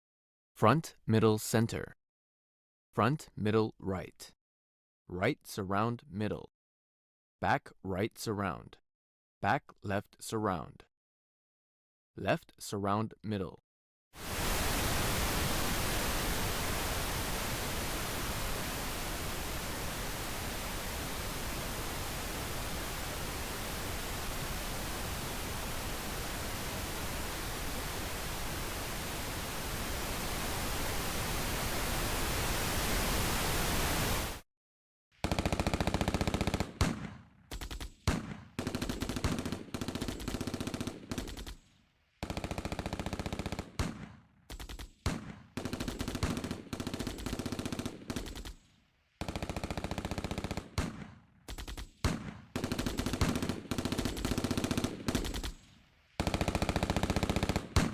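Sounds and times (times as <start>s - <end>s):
steady pink noise hiss: 14.2s - 34.4s
sharp bursts and blasts: 35.2s - 37.0s, 56.2s - 57.9s.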